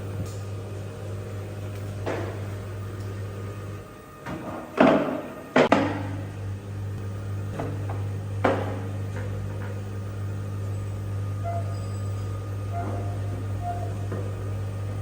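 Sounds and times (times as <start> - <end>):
sharp knocks and bangs: 4.8 - 6.1
steady low hum: 5.2 - 15.0.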